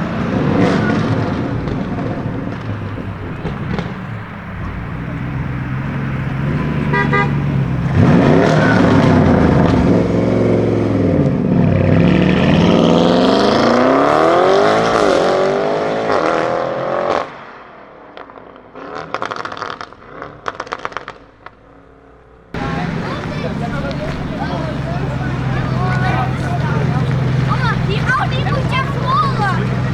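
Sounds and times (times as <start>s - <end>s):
exhaust pops and crackles: 0.0s - 11.4s, 19.1s - 21.6s, 22.6s - 29.9s
car engine accelerating hard: 0.0s - 17.5s, 22.6s - 29.9s.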